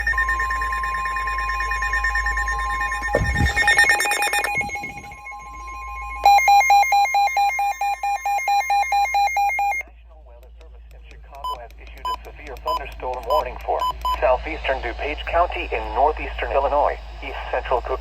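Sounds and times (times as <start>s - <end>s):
fast pulsing beep: 0.0s - 9.8s, 11.4s - 14.3s
steady alarm tone: 0.0s - 9.8s
two-tone beeping alarm: 0.0s - 9.8s.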